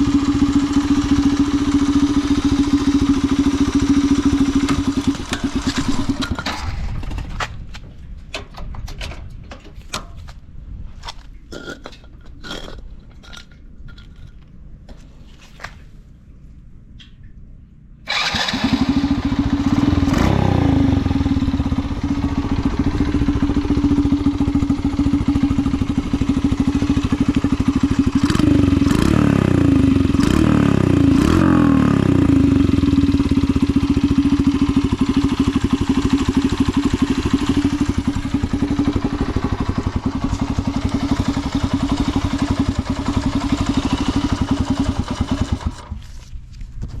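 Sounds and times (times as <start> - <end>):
motorcycle engine idling: 0.0 - 6.4, 18.1 - 46.1.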